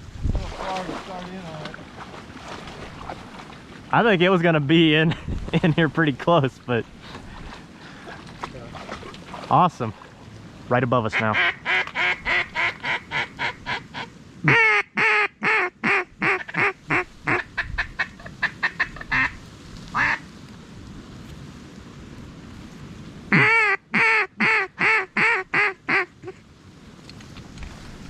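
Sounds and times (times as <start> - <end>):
duck call quacking: 11.1 - 19.4, 20.0 - 20.2, 23.3 - 26.4.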